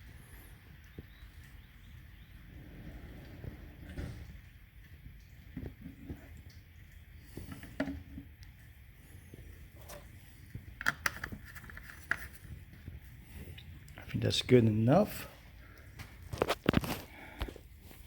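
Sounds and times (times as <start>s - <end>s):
faint clicks and handling knocks: 7.2s - 14.2s.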